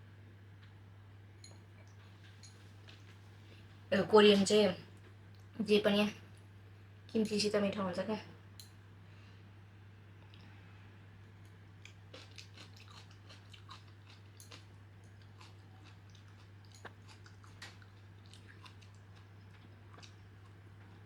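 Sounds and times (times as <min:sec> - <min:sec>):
chewing and crunching food: 0:01.8 - 0:03.8, 0:11.3 - 0:21.0.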